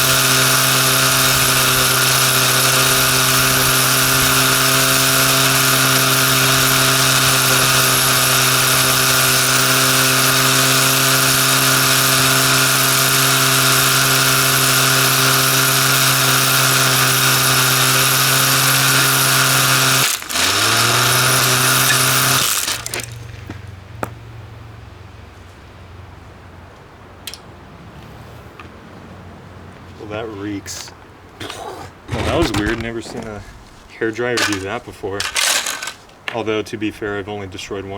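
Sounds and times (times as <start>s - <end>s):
hair dryer running: 20.0s - 23.0s.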